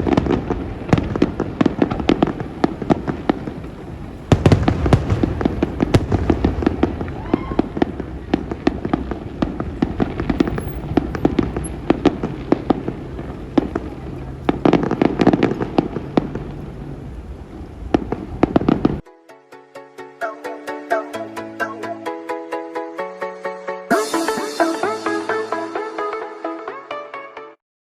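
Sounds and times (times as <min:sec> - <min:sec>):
fireworks bangs and crackles: 0:00.0 - 0:19.0
electronic music with steady beat: 0:19.5 - 0:27.3.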